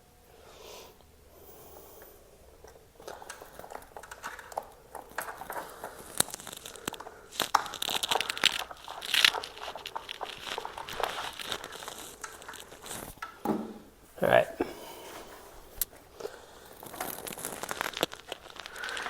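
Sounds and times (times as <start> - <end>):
crinkling and rustling: 1.0 - 19.0
plastic parts clicking: 2.6 - 13.5.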